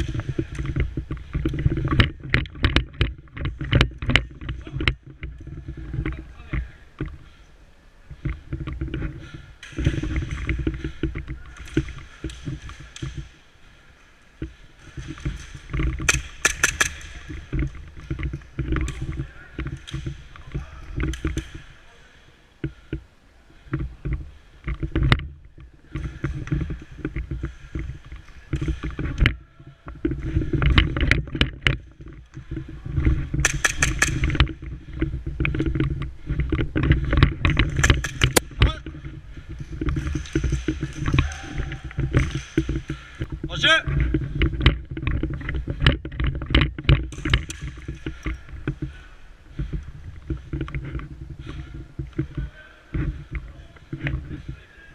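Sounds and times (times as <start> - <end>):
airsoft guns firing: 16.0 - 17.4, 33.4 - 34.4.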